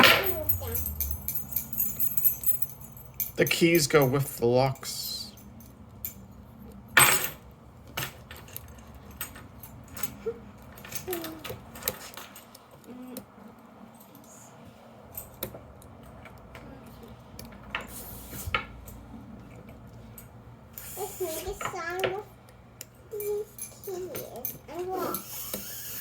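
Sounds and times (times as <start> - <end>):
keys jangling against locks: 0.0 - 6.2, 8.0 - 12.6.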